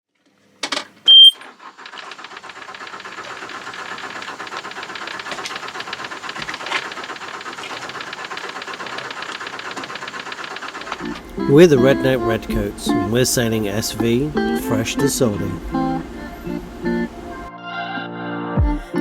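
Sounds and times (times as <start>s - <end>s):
short electronic alarm beep: 1.1s - 1.4s
boat diesel engine running: 1.4s - 17.5s.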